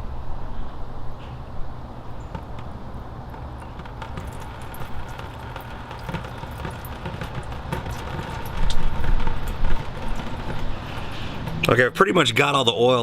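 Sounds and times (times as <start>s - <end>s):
liquid splattering from a jar: 3.3s - 11.7s.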